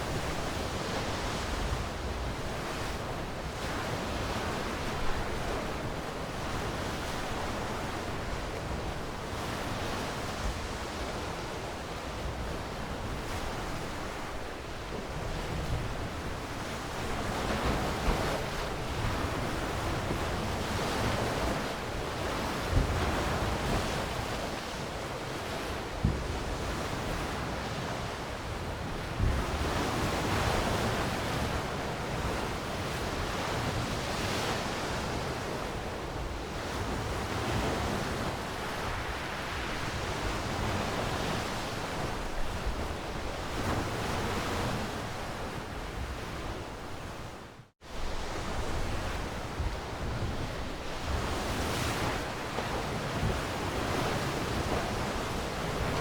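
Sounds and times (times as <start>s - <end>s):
ocean waves washing: 36.9s - 56.0s.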